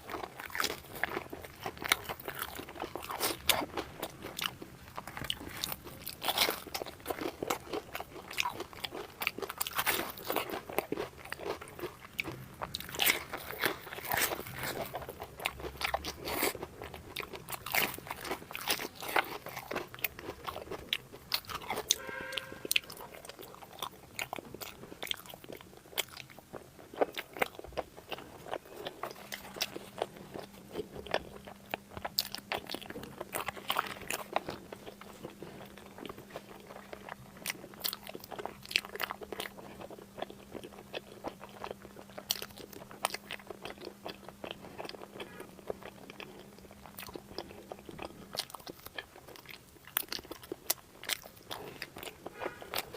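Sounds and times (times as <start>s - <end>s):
faint low hum: 0.0s - 52.9s
person chewing crunchy food: 0.0s - 52.9s.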